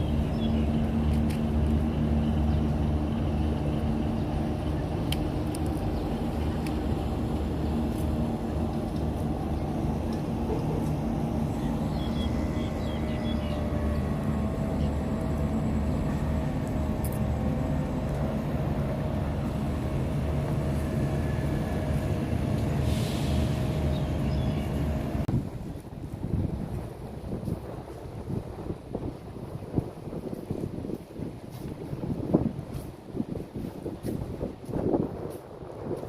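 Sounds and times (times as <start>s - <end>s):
engine droning: 0.0s - 26.2s.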